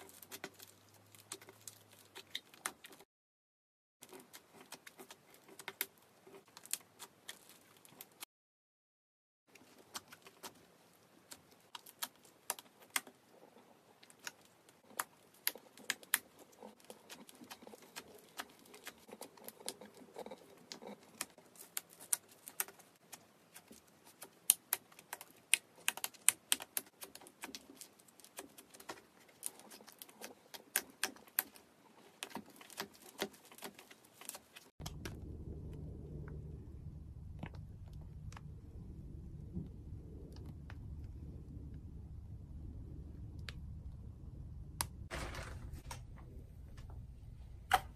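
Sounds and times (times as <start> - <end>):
steady low hum: 34.8 - 47.9.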